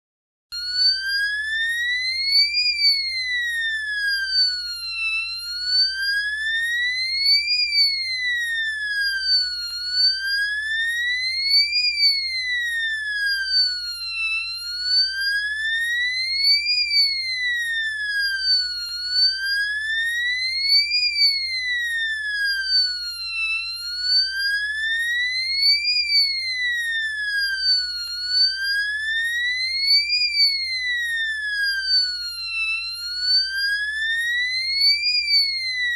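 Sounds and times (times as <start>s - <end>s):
emergency siren wailing: 0.6s - 35.9s.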